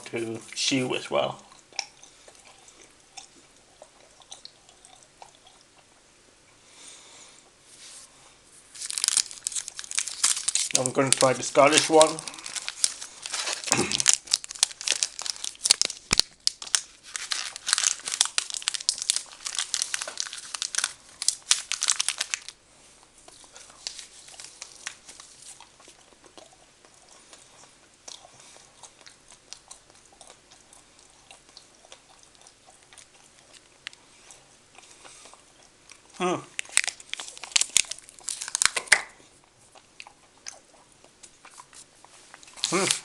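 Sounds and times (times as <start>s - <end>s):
faint chewing: 1.4s - 6.6s, 8.6s - 43.0s
wrapper crinkling and tearing: 8.7s - 22.6s, 23.3s - 25.7s, 36.5s - 39.2s, 42.4s - 43.0s.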